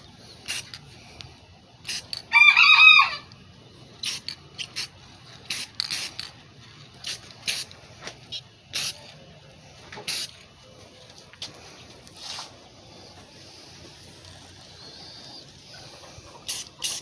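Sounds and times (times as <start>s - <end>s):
aerosol can spraying: 0.5s - 0.8s, 1.9s - 2.2s, 4.0s - 4.9s, 5.5s - 6.2s, 7.0s - 7.7s, 8.8s - 9.0s, 10.0s - 10.4s, 13.8s - 17.0s.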